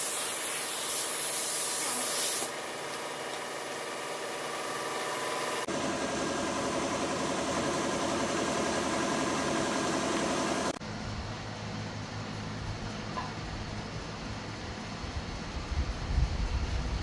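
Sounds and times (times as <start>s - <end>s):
power tool running: 1.8s - 10.8s.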